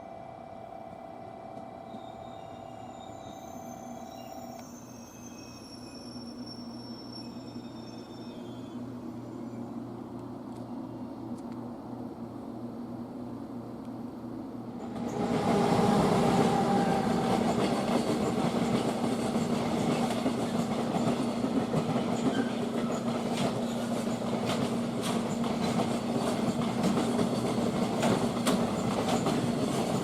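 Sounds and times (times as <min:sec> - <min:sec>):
train rumbling on rails: 0:00.0 - 0:30.0
rail clicks: 0:14.8 - 0:30.0.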